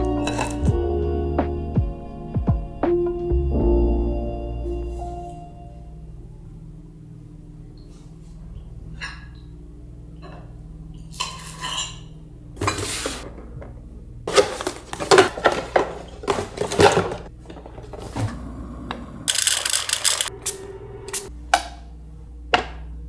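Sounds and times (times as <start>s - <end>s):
dishes and cutlery clattering: 0.0s - 0.8s, 11.1s - 18.2s.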